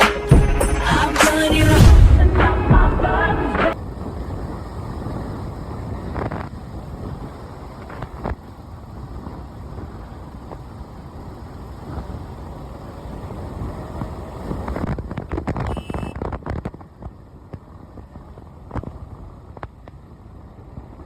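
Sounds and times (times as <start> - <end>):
vehicle road noise: 0.0 - 21.0.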